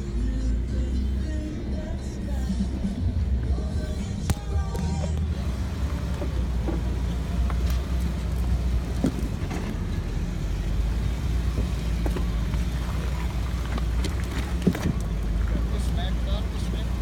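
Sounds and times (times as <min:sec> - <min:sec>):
low engine rumble: 0:00.0 - 0:17.0
suspension knocks and creaks: 0:04.3 - 0:10.2, 0:11.4 - 0:15.7.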